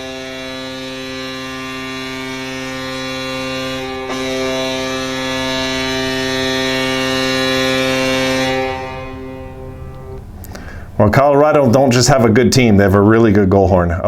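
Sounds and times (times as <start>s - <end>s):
arena goal horn blast: 0.0s - 10.8s.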